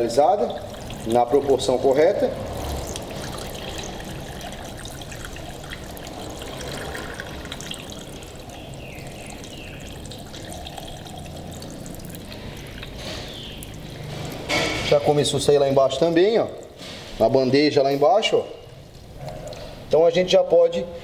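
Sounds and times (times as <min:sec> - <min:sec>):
water trickling into cooling system: 0:00.0 - 0:21.0.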